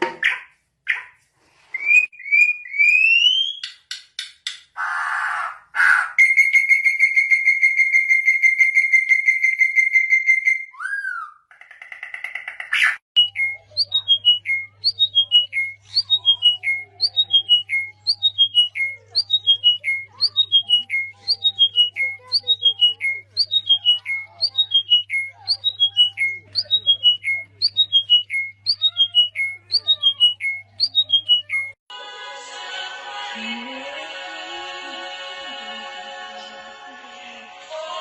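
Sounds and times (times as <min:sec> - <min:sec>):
birds whistling and calling: 0:12.4 - 0:31.8.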